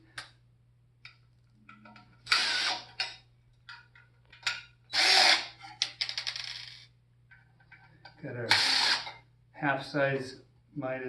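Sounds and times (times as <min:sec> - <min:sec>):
cordless drill running: 0:02.3 - 0:02.9, 0:04.9 - 0:05.5, 0:08.5 - 0:09.1.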